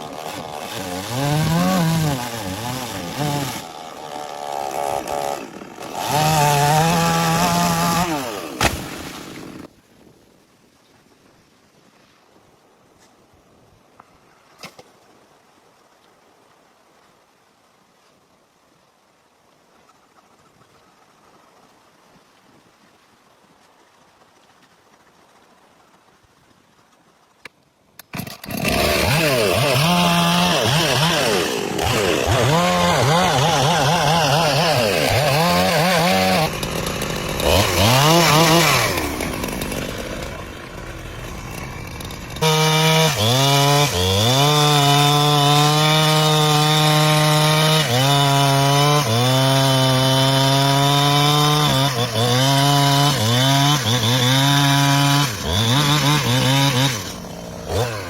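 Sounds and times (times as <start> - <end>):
chainsaw revving and cutting wood: 0.0 - 9.7, 28.0 - 58.0.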